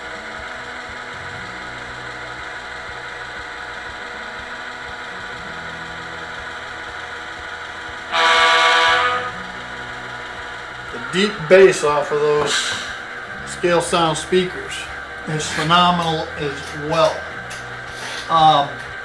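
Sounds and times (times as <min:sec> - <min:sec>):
diesel locomotive engine through speakers: 0:00.0 - 0:19.0
locomotive horn blast: 0:08.1 - 0:09.5.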